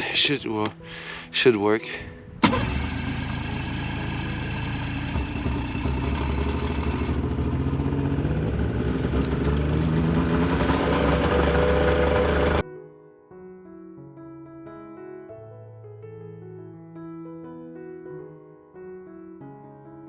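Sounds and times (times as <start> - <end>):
snowmobile engine running: 2.4 - 12.6.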